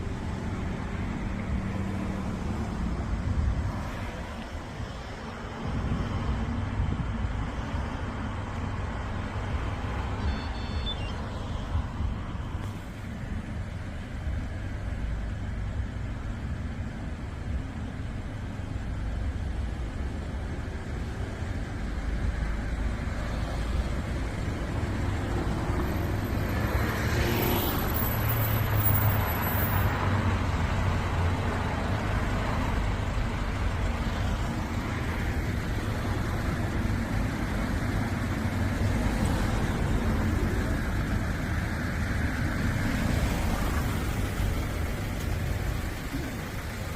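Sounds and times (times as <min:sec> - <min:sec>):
wind and road noise rumble: 0:00.0 - 0:46.9.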